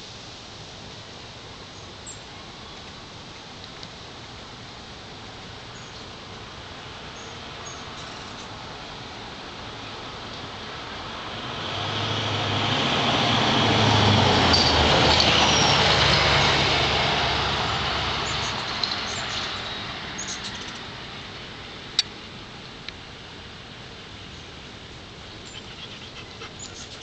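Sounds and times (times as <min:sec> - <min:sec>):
vehicle passing by: 0:06.7 - 0:22.0.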